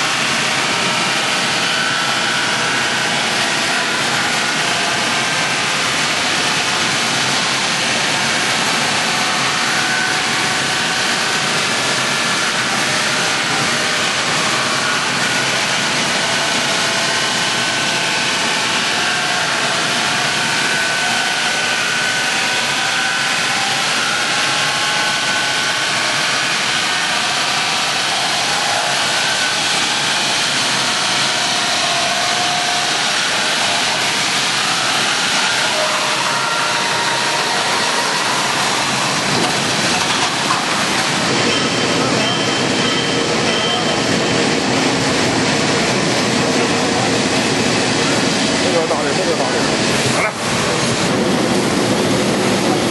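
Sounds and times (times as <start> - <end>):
wood chipper running: 0.0 - 52.9.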